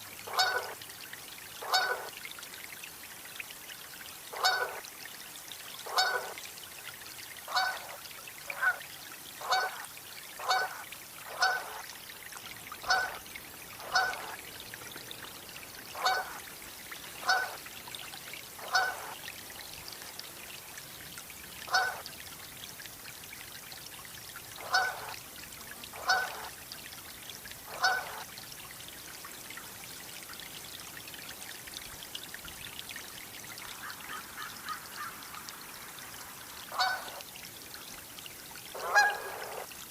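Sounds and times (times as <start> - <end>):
goose honking: 0.4 - 0.7, 10.4 - 11.8, 12.8 - 13.2, 13.8 - 14.4, 16.0 - 16.3, 17.2 - 17.6, 18.6 - 19.1, 21.7 - 22.0, 26.0 - 26.4, 27.8 - 28.1, 36.7 - 37.1, 38.8 - 39.4.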